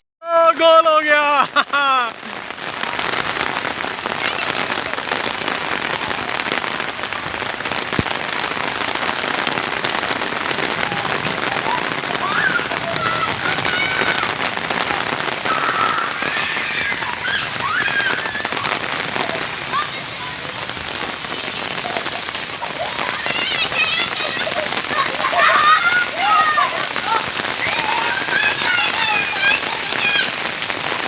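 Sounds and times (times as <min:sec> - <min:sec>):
heavy rain hiss: 0:00.3 - 0:31.0
faint high voices calling: 0:10.3 - 0:30.5.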